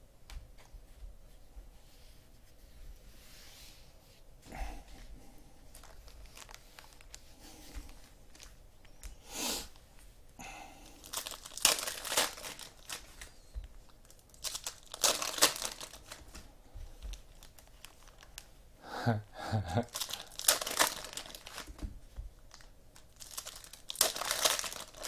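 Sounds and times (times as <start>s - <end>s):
wrappers crinkling: 5.7s - 10.0s, 10.8s - 18.5s, 19.8s - 25.0s
card packs tearing: 10.8s - 13.4s, 14.0s - 16.3s, 19.8s - 21.8s, 22.5s - 25.0s.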